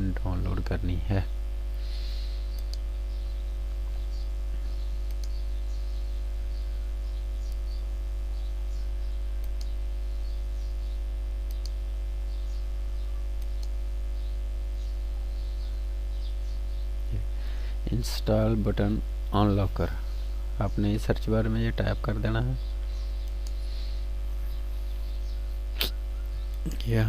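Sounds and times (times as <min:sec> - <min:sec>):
electrical mains hum: 0:00.0 - 0:27.0
faint small clicks and ticks: 0:02.5 - 0:02.9, 0:05.0 - 0:05.8, 0:08.4 - 0:09.8, 0:11.4 - 0:11.8, 0:13.0 - 0:15.7, 0:22.6 - 0:23.7.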